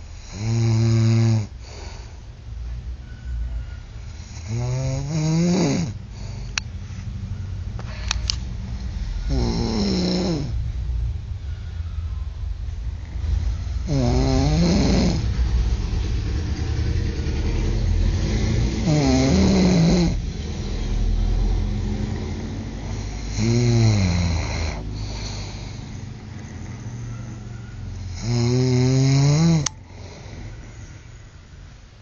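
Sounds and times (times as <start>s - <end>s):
steady low hum: 0.0s - 32.0s
men snoring loudly: 0.2s - 1.9s, 4.2s - 6.4s, 9.2s - 10.6s, 13.8s - 15.3s, 18.1s - 21.0s, 22.0s - 30.9s.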